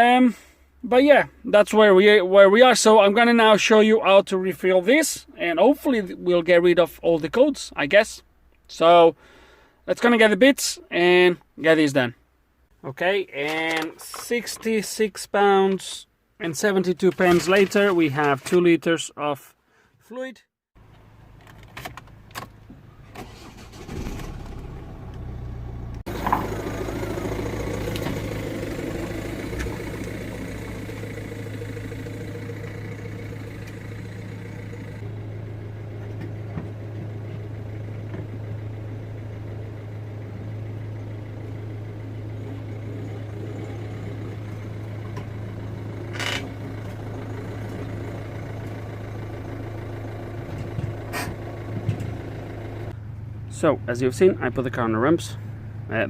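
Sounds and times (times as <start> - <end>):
diesel engine starting and idling: 22.2 - 56.0.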